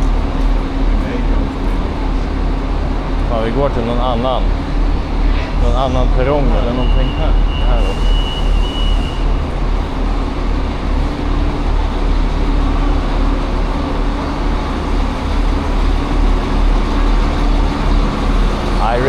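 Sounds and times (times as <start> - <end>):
diesel train engines idling: 0.0 - 19.0.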